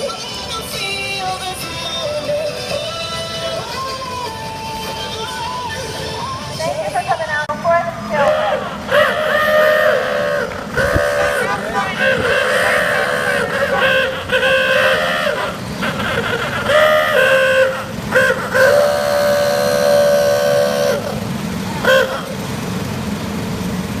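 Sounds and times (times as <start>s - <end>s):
small car engines rumbling: 0.0s - 24.0s
car horns honking: 6.8s - 22.6s.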